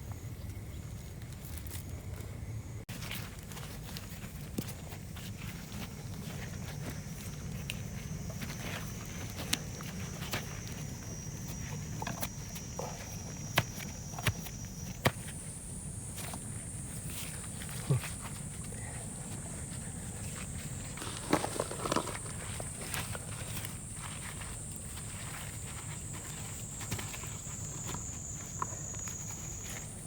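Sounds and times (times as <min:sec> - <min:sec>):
potatoes knocking when dug: 0:20.9 - 0:23.2.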